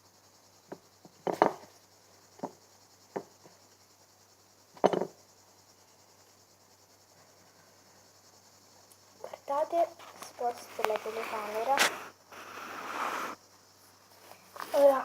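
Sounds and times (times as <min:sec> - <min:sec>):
faint steady hiss: 0:00.0 - 0:15.0
objects knocking and tapping: 0:00.7 - 0:01.8, 0:02.4 - 0:03.6, 0:04.8 - 0:05.2.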